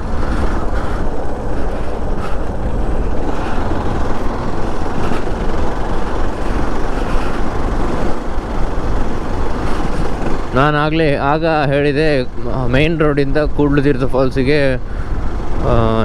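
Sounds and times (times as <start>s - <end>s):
wind rushing over microphone: 0.0s - 13.7s
motorcycle engine: 0.0s - 16.0s
road noise: 0.0s - 16.0s.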